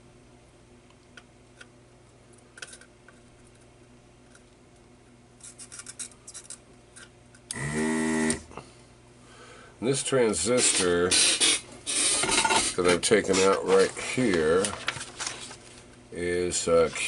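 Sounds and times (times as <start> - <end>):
low steady hum: 0.0 - 17.0
small tools clicking and scraping: 5.4 - 7.5.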